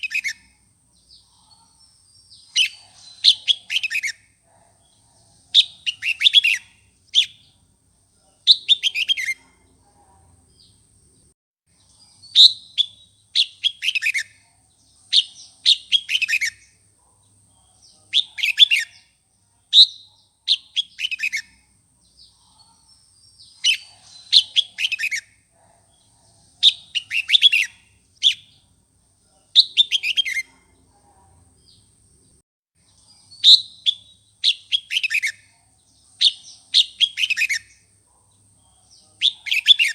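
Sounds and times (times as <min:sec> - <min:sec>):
bulbul song: 0:00.0 - 0:01.2, 0:05.5 - 0:07.6, 0:08.4 - 0:09.4, 0:11.8 - 0:16.8, 0:29.5 - 0:30.5, 0:32.8 - 0:37.9, 0:38.9 - 0:39.9.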